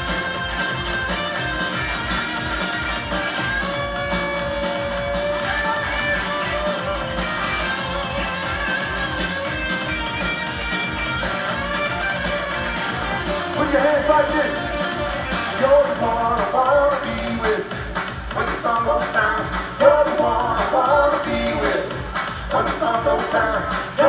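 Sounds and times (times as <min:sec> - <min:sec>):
guitar lead melody: 0:00.0 - 0:16.0
live band playing: 0:00.0 - 0:24.0.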